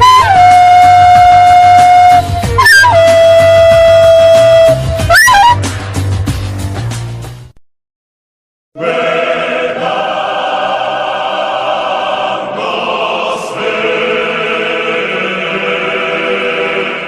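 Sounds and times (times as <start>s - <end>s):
choir singing held chords: 8.8s - 17.0s.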